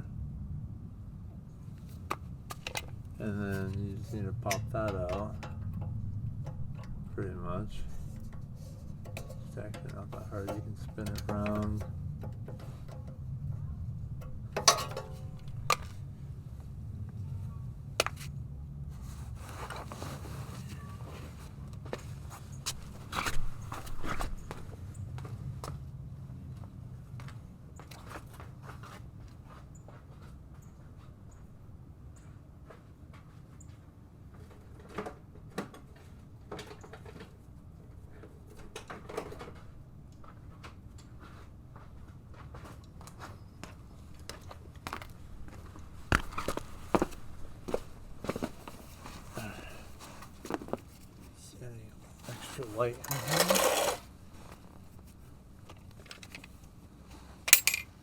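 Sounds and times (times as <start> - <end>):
steady low hum: 0.0 - 27.8
low background hum: 0.0 - 58.0
hand tools clicking and knocking: 2.1 - 7.1, 7.7 - 13.3, 14.1 - 16.0, 53.0 - 54.1, 57.5 - 58.0
soft metal scraping: 2.8 - 16.0, 52.1 - 55.2
metal parts clicking: 57.5 - 57.9
metallic clink: 57.5 - 58.0.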